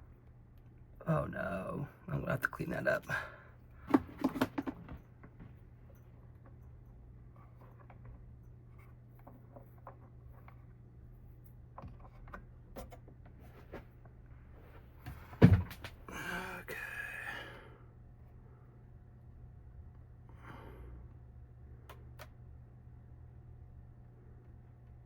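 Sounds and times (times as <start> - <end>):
clicks and taps of computer parts: 3.9 - 5.0.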